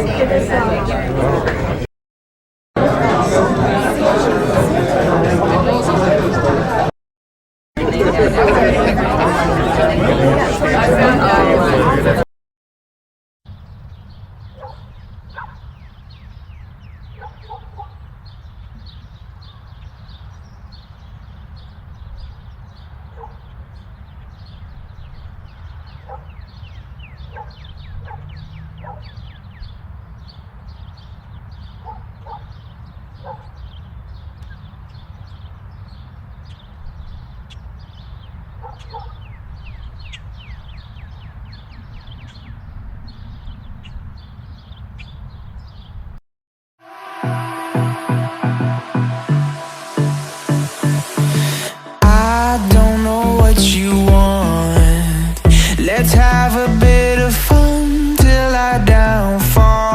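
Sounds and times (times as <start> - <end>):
small birds chirping: 13.5 - 46.1
distant traffic rumble: 13.5 - 46.2
dog barking: 14.6 - 15.6, 17.1 - 18.0, 23.1 - 23.4, 26.0 - 26.4, 27.3 - 29.2, 31.8 - 32.5, 33.2 - 33.6, 38.6 - 39.2.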